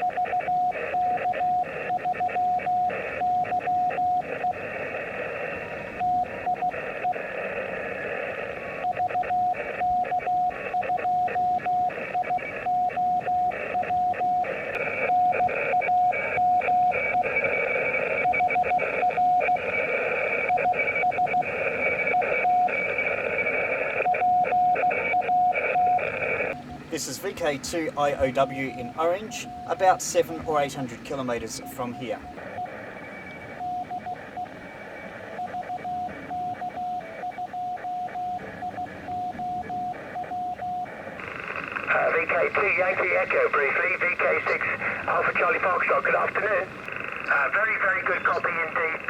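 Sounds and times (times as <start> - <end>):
morse code tone: 8.7 - 49.0
radio band hiss: 24.7 - 49.0.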